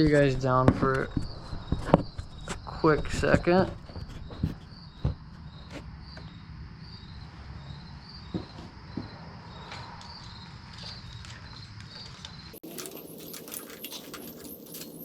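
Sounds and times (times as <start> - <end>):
insects chirping: 0.0 - 15.0
handling clicks and knocks: 10.0 - 15.0.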